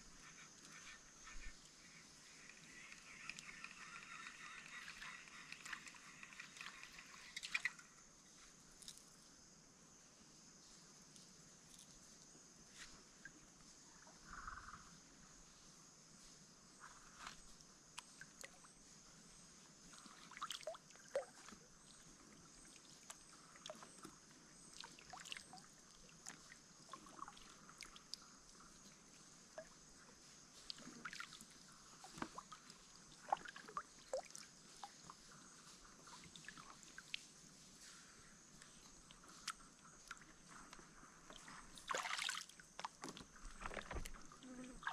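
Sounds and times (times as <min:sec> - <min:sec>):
forest insects droning: 0:00.0 - 0:44.9.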